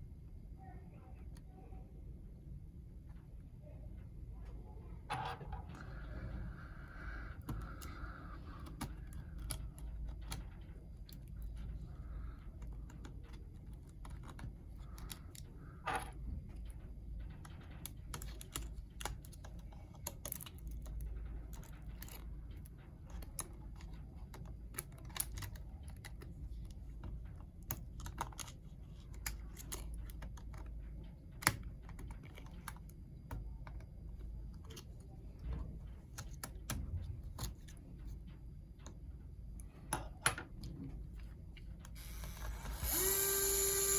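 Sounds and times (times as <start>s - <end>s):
steady low hum: 0.0s - 43.9s
laptop parts clicking and tapping: 12.4s - 15.5s, 27.0s - 33.8s.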